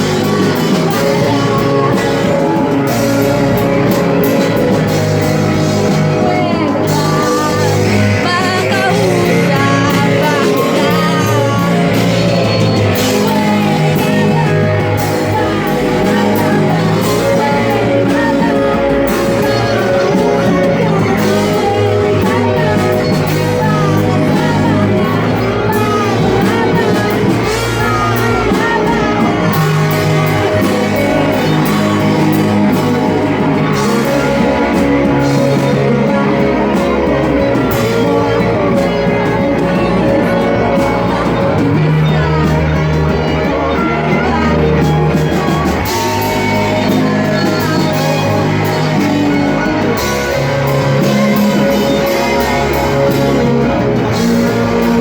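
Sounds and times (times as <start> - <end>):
live rock band with singer: 0.0 - 55.0.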